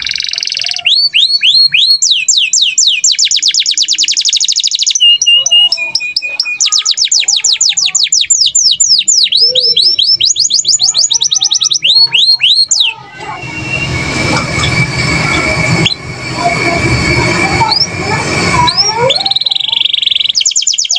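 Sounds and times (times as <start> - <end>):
canary singing trills: 0.0 - 20.9
steady thin tone: 11.0 - 19.7.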